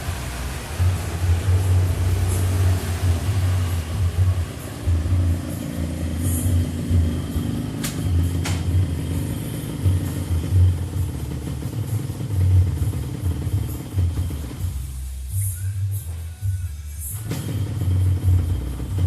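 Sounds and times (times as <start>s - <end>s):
motorcycle engine pulsing: 0.0s - 15.6s, 17.2s - 19.0s.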